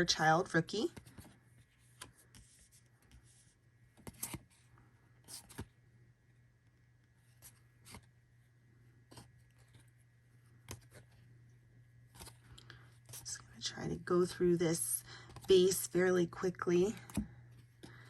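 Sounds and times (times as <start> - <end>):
faint steady hum: 0.0 - 18.0
cards flicking and rustling: 0.8 - 3.3, 3.9 - 5.8, 7.2 - 8.1, 9.0 - 11.3, 12.0 - 13.4, 16.9 - 18.0.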